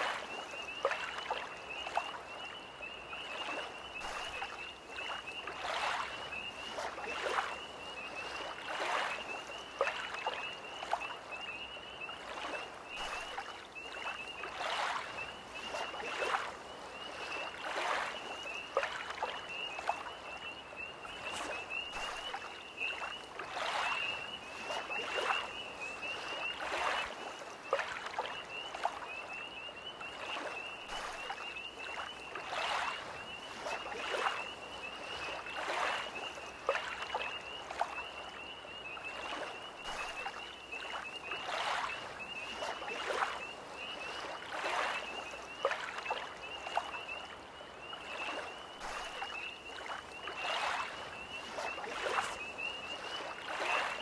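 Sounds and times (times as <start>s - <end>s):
waves lapping against shore: 0.0s - 54.0s.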